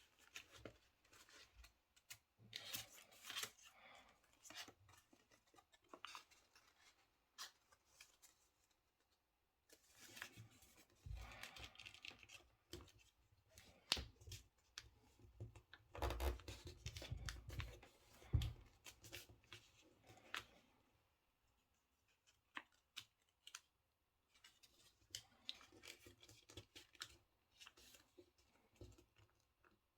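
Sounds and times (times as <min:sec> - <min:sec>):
paper crinkling and rustling: 0:00.0 - 0:14.9.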